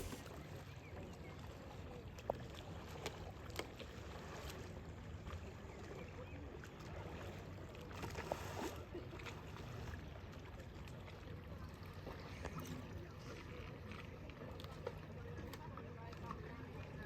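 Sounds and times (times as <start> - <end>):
water against boat hull: 0.0 - 0.4.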